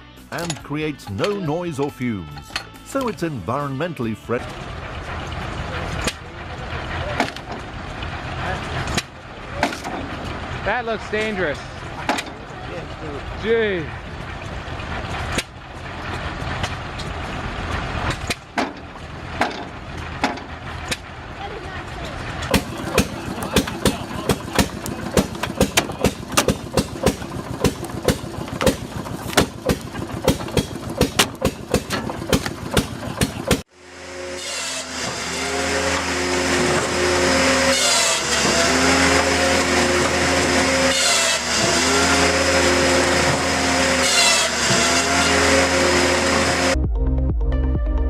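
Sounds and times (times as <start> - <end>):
engine-driven machine running: 0.3 - 46.8
rapid clatter of sharp knocks: 22.4 - 33.7.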